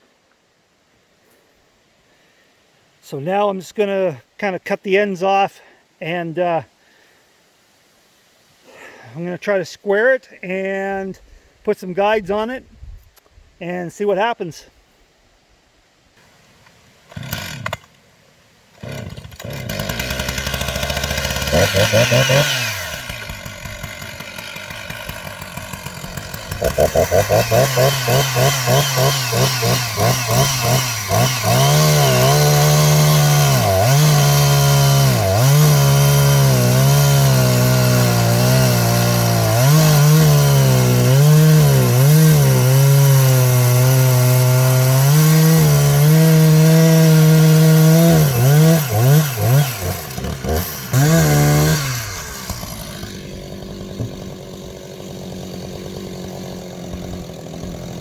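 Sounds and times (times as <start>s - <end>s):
chainsaw cutting log: 17.0s - 18.0s, 18.7s - 58.0s.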